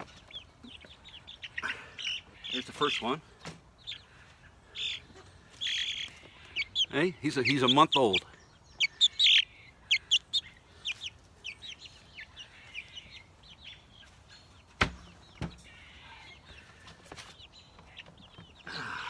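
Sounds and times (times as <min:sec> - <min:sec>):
chicks peeping: 0:00.0 - 0:19.0.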